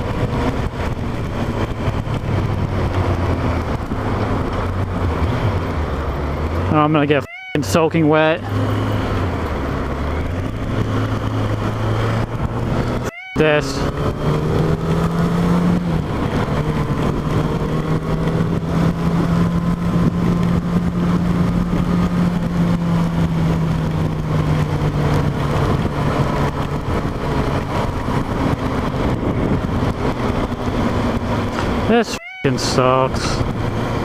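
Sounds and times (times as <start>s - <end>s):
wind rush over microphone: 0.0s - 6.6s, 13.9s - 31.9s, 33.1s - 34.0s
motorcycle engine cruising: 0.0s - 34.0s.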